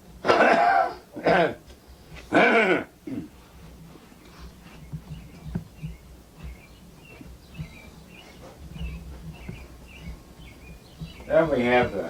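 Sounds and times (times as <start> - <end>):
low handling thumps: 3.3 - 12.0
footsteps in a house: 3.4 - 12.0.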